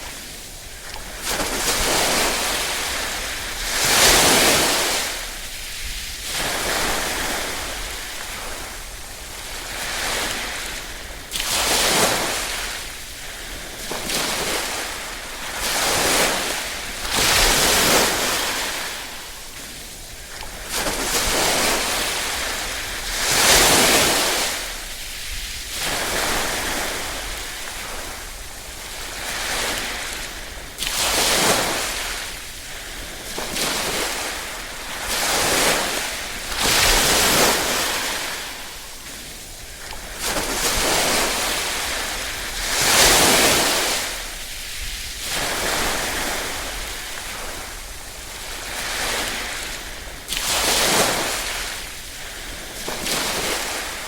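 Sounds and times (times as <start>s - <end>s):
small waves lapping on shore: 0.0s - 54.0s.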